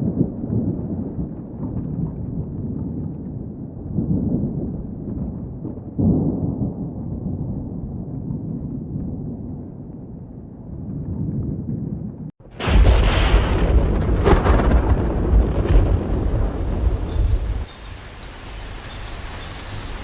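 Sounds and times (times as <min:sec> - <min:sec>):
low rolling thunder: 0:00.0 - 0:20.0
loud thunder crack: 0:12.4 - 0:20.0
steady rain: 0:12.4 - 0:20.0.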